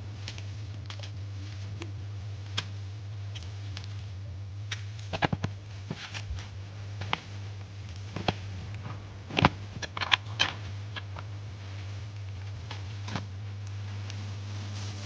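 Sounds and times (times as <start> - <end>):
low hum: 0.0 - 15.0.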